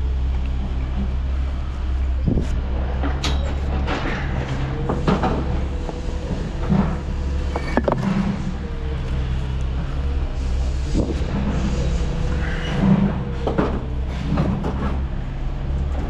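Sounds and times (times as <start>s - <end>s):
low engine rumble: 0.0s - 16.0s
knocks clicks and rattles: 3.0s - 8.4s.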